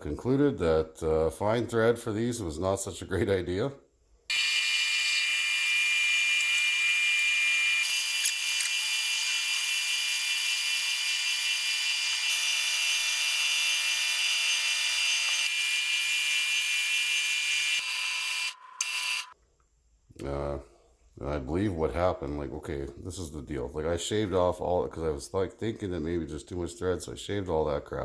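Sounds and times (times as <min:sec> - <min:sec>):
electric power tool whining: 0:04.3 - 0:19.3.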